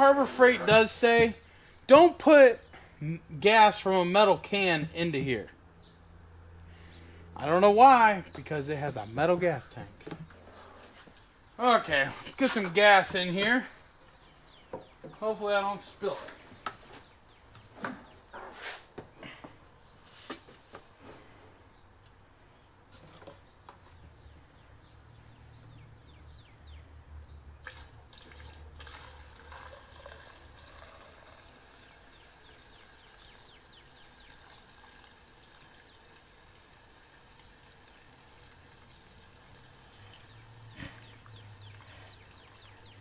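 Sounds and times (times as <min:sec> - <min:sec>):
liquid trickling into tank: 0:27.6 - 0:43.0.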